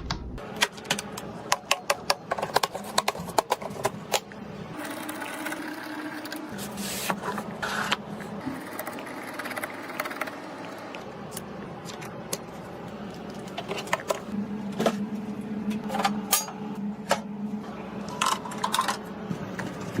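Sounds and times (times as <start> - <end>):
low steady hum: 6.2 - 20.0.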